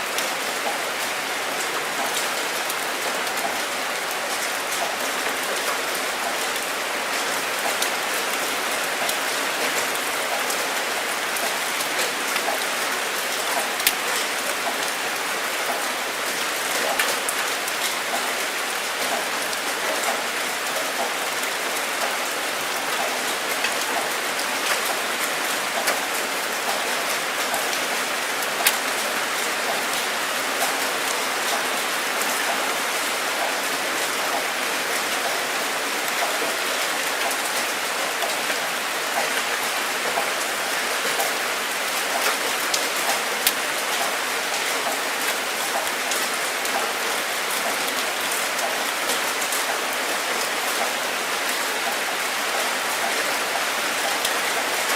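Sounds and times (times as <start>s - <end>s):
steady rain falling: 0.0s - 54.9s.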